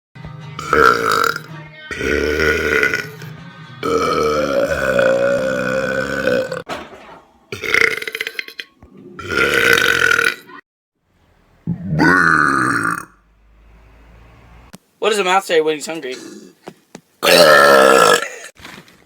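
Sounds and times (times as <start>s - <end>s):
person belching loudly: 0.6s - 6.7s, 7.5s - 10.6s, 11.7s - 13.2s, 16.1s - 16.6s, 17.2s - 18.5s.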